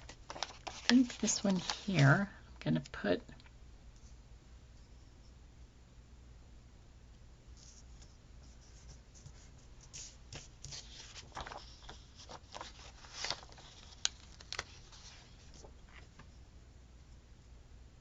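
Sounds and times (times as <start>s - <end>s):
paper rustling and scraping: 0.0s - 2.2s, 7.6s - 16.3s.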